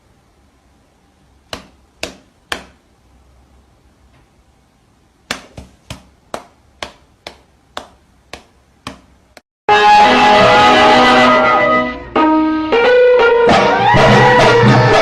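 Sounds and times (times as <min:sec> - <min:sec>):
sharp taps: 0:01.5 - 0:02.8, 0:05.3 - 0:09.4.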